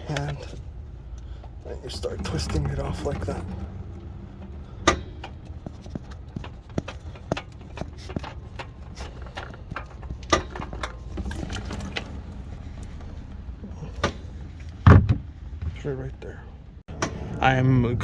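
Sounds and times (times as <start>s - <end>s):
oil filter clicking and knocking: 4.4s - 12.2s.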